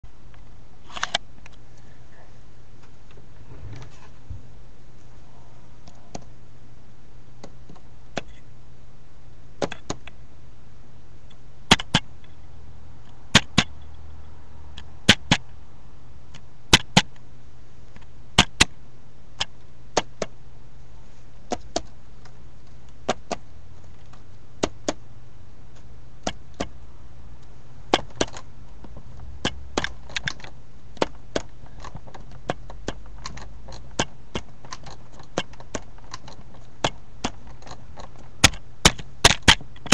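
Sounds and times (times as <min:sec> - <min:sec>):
steady low hum: 0:00.0 - 0:39.9
sharp clicks: 0:11.3 - 0:12.1, 0:13.0 - 0:14.0, 0:27.9 - 0:39.9.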